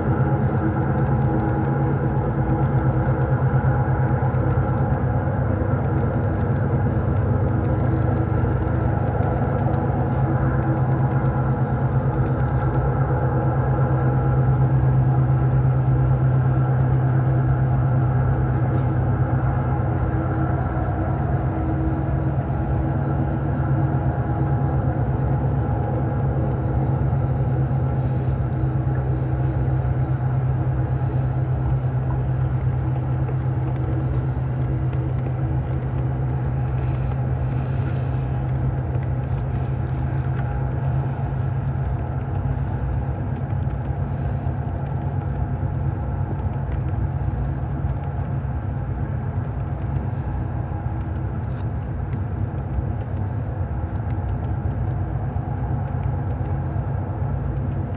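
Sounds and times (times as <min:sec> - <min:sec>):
constant tonal hum: 0:00.0 - 0:57.9
diesel locomotive engine drone: 0:00.0 - 0:57.9.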